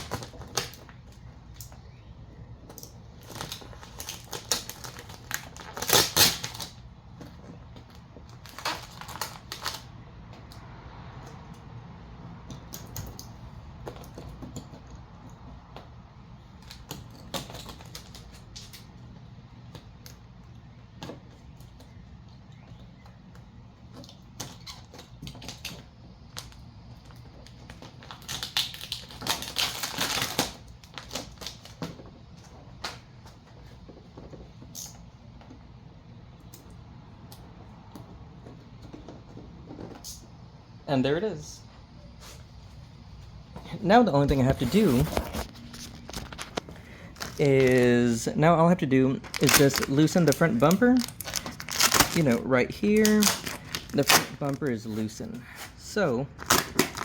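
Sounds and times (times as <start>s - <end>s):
vinyl wrap film crackling: 0.0s - 38.0s, 42.1s - 57.0s.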